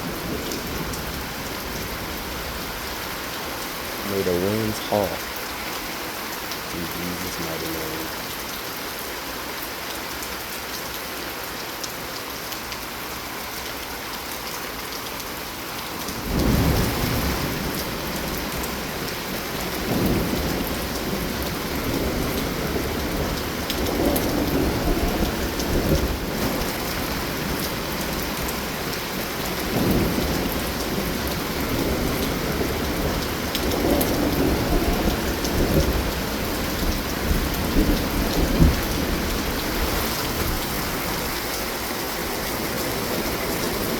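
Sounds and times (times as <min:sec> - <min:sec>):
steady rain: 0:00.0 - 0:43.9
thunder rumbling: 0:16.2 - 0:43.9.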